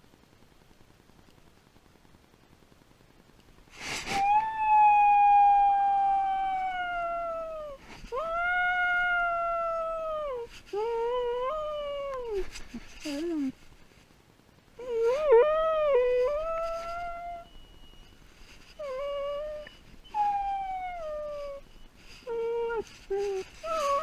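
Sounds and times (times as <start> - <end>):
dog howling: 4.1 - 13.5, 14.8 - 17.6, 18.5 - 24.0.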